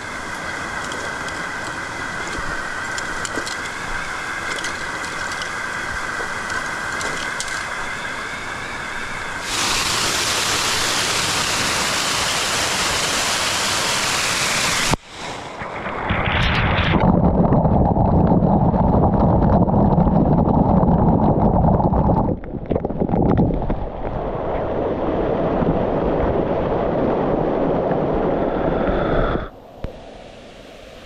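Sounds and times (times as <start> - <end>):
rushing water: 0.0 - 17.8.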